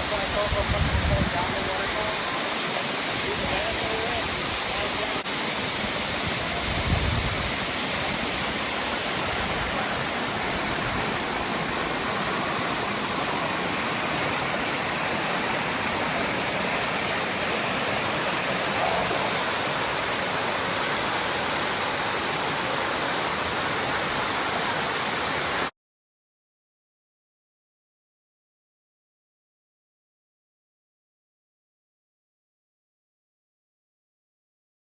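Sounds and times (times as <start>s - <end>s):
waterfall rushing: 0.0s - 25.7s.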